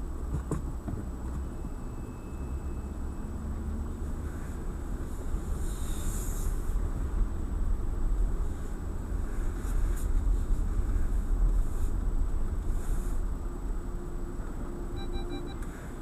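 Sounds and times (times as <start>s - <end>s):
car cabin road rumble: 0.0s - 16.0s
quick electronic beeps: 15.0s - 15.6s.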